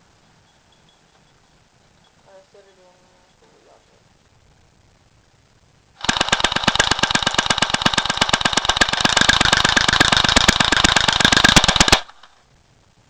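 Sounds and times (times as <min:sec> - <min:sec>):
airsoft gun firing full-auto: 0:06.0 - 0:12.3.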